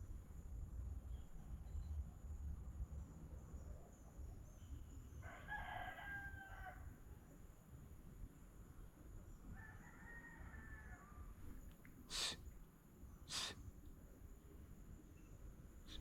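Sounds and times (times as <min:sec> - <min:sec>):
rooster crowing: 0:05.2 - 0:06.9, 0:09.6 - 0:11.3.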